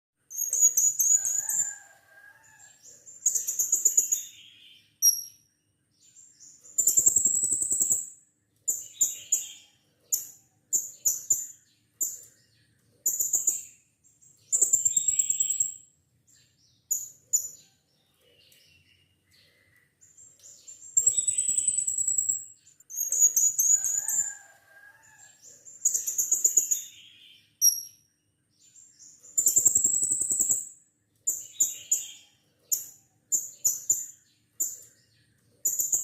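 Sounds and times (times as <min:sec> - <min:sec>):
parrot shrill chirps and trills: 0:00.3 - 0:02.6.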